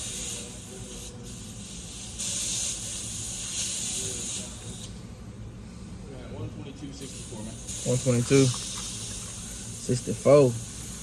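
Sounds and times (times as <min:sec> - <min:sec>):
loud spraying hiss: 0:00.0 - 0:04.9, 0:07.0 - 0:11.0.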